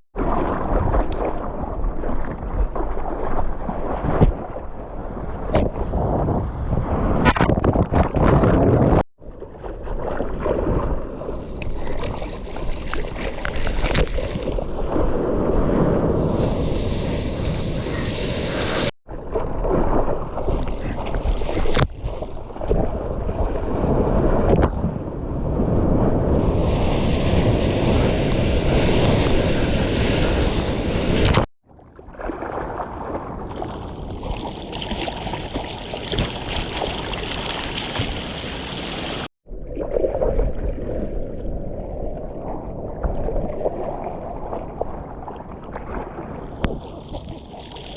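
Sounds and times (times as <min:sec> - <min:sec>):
wind buffeting microphone: 0:05.0 - 0:09.0
ocean surf breaking: 0:15.1 - 0:18.9, 0:25.4 - 0:31.4.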